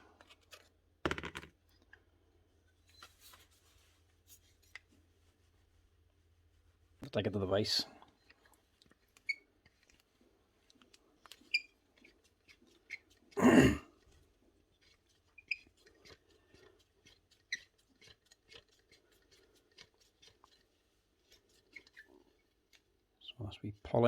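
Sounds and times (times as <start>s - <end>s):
metal parts clicking and squeaking: 8.2s - 10.0s, 11.2s - 13.3s, 14.8s - 16.3s, 17.0s - 20.6s, 21.2s - 22.6s.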